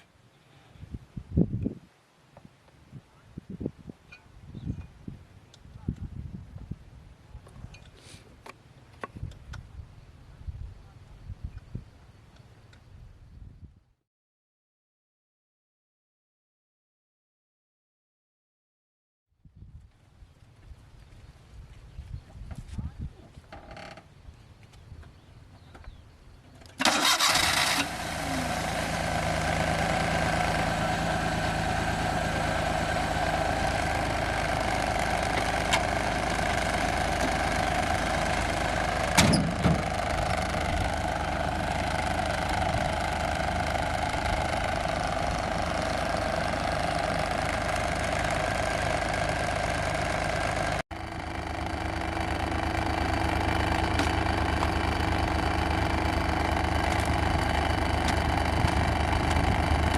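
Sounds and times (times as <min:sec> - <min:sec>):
car engine starting and idling: 0:26.6 - 0:59.9.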